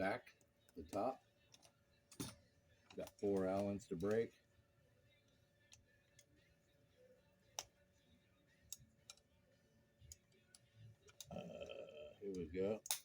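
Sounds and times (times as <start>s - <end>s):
faint metallic clicks and taps: 0.3s - 4.3s, 12.8s - 13.0s.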